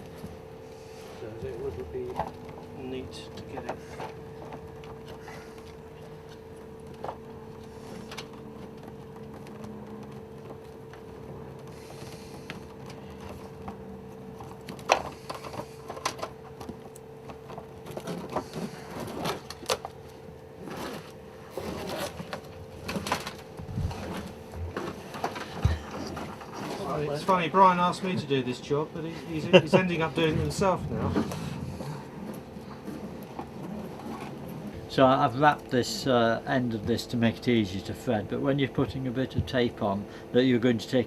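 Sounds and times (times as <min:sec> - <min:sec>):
steady hum: 0:00.0 - 0:41.0
cables rustling and knocking: 0:01.4 - 0:28.4.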